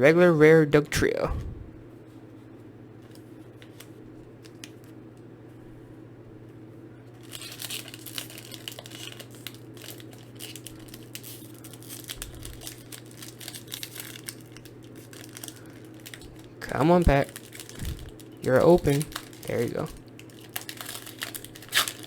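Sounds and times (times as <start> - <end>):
steady low hum: 0.0 - 22.0
foil wrapper crinkling and tearing: 3.1 - 4.9, 7.2 - 22.0.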